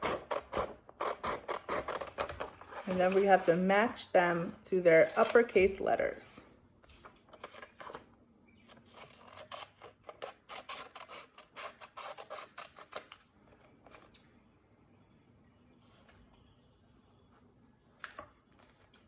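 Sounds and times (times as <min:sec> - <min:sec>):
scissors cutting paper: 0:00.0 - 0:03.5, 0:05.0 - 0:05.7, 0:08.9 - 0:13.2.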